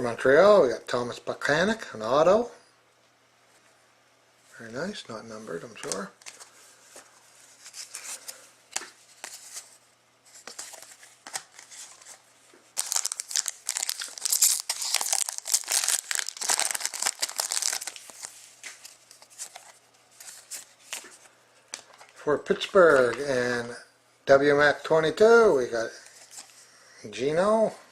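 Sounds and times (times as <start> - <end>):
wrapper crinkling and tearing: 12.8 - 21.1.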